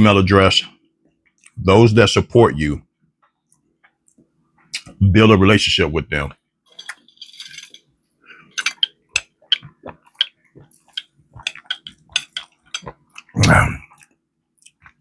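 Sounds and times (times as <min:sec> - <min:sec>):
crunchy chewing: 0:08.4 - 0:15.0.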